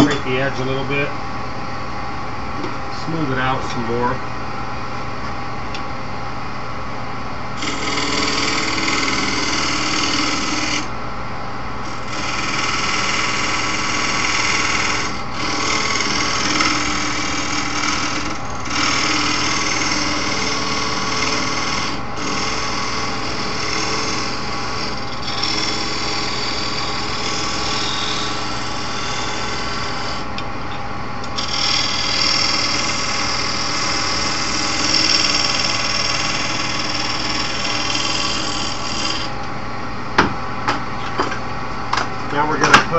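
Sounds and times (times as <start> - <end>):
tool scraping spinning wood: 0.0 - 0.8, 7.6 - 10.9, 11.8 - 30.3, 31.4 - 39.4
lathe motor humming: 7.6 - 10.9, 11.8 - 30.4, 31.2 - 39.3.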